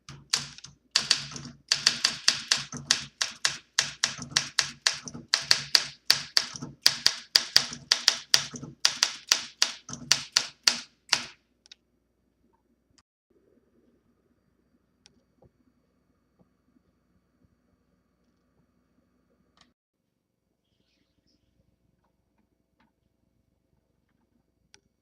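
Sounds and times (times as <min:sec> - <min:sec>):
manual typewriter typing: 0:00.0 - 0:11.4.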